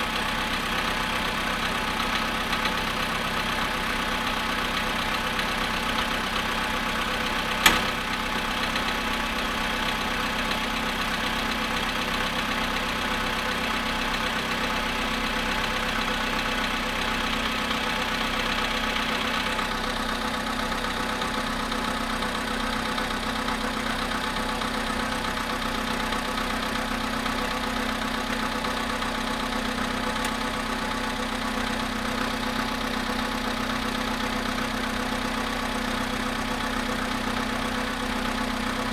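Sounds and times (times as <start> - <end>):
car engine idling with knock: 0.0 - 38.9
sharp click: 7.6 - 8.1.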